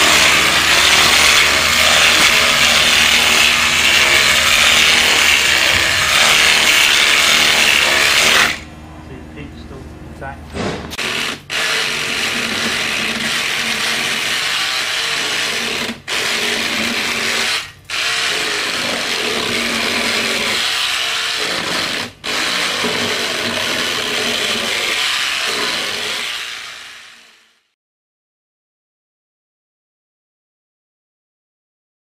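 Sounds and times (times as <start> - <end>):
power tool whirring: 0.0 - 8.7, 10.9 - 27.7.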